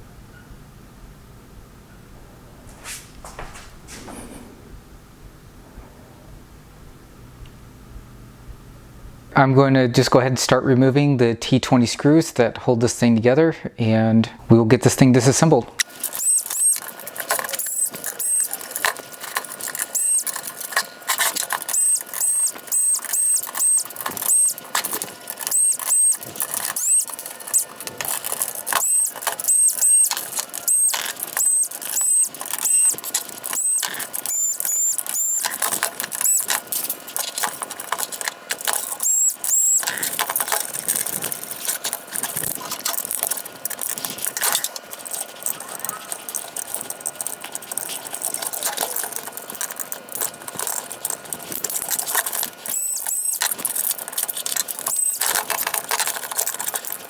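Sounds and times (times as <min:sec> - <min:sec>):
electric screwdriver whirring: 0:15.8 - 0:57.0.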